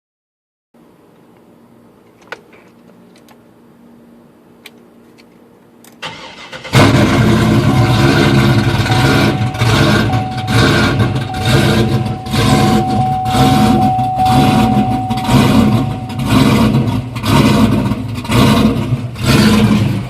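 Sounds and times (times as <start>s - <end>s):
engine idling roughly: 6.2s - 20.0s.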